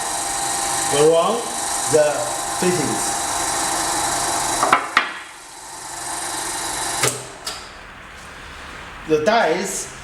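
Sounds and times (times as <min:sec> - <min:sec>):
hydraulic machine whine: 0:00.0 - 0:07.7.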